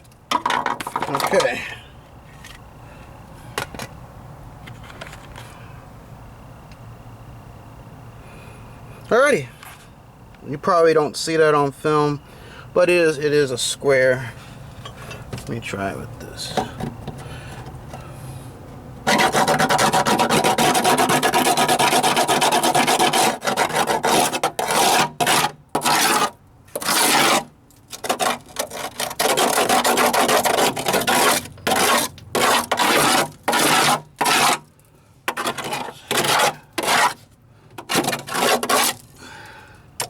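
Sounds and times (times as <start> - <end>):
hand tool scraping steel: 0.8 - 1.7, 19.0 - 39.2.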